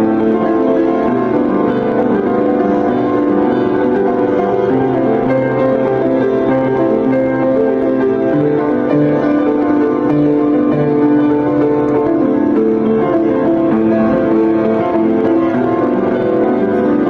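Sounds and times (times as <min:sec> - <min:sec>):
piano background music: 0:00.0 - 0:17.0.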